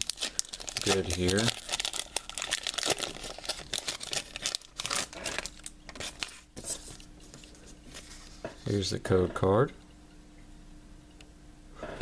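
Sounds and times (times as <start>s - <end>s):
foil wrapper tearing and crinkling: 0.0s - 7.0s.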